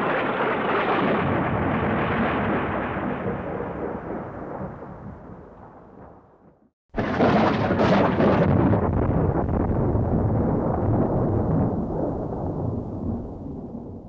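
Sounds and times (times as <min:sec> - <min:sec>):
thunder crack and rumble: 0:00.0 - 0:14.0.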